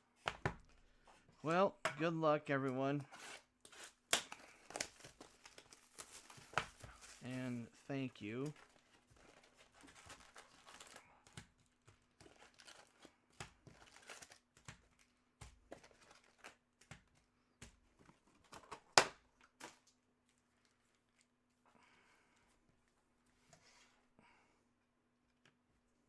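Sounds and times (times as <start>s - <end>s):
plastic wrapping crinkling and tearing: 3.7s - 16.9s.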